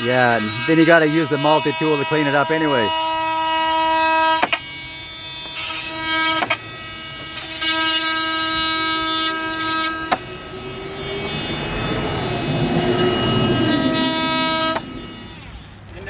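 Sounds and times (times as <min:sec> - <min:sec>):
oscillating multitool buzzing: 0:00.0 - 0:16.0.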